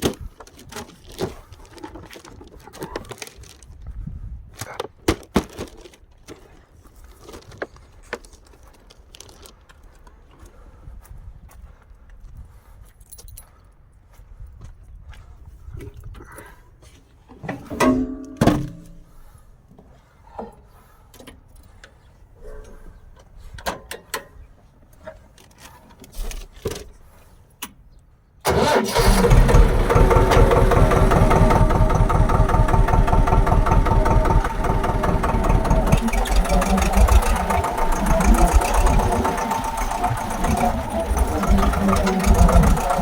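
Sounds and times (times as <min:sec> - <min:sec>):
tractor engine running: 0:28.4 - 0:43.0.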